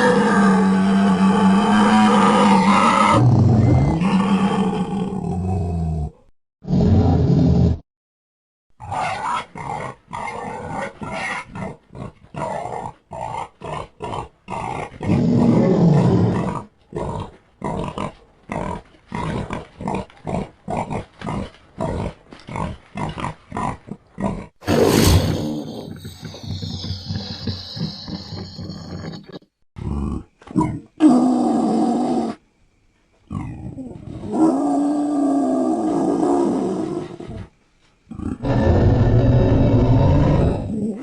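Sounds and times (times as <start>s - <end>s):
loud creature call: 0.0s - 5.8s
creature growl: 38.1s - 41.0s.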